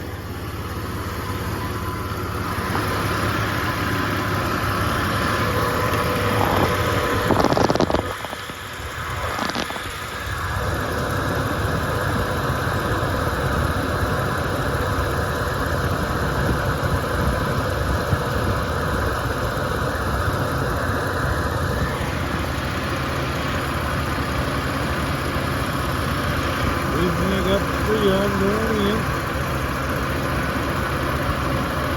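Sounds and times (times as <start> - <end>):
air conditioning blowing: 0.0 - 9.2, 15.8 - 31.9
car engine idling: 0.0 - 31.9.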